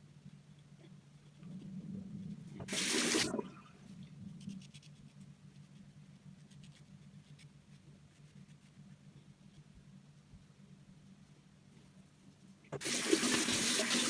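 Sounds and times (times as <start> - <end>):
water rushing: 2.7 - 3.5, 12.8 - 14.0.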